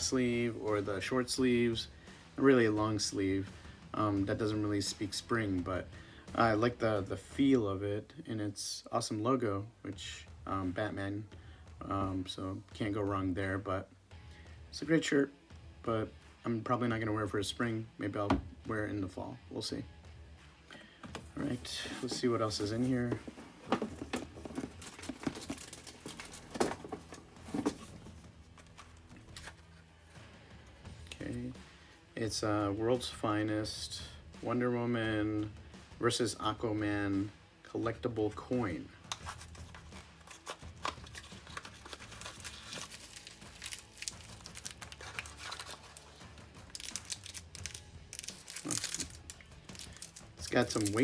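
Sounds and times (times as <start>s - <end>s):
packaging rustling and crinkling: 21.2s - 29.6s, 39.1s - 51.0s.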